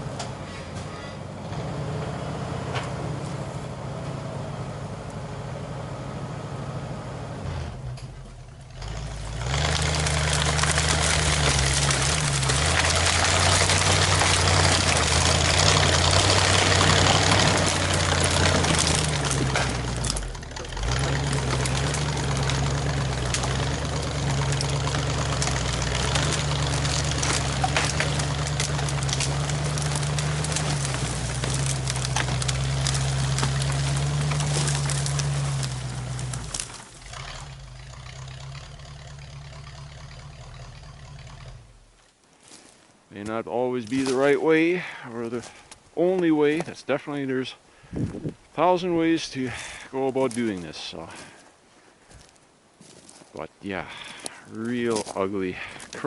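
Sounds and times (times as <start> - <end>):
skidder engine running: 0.0 - 42.0, 47.8 - 51.5, 53.9 - 56.0.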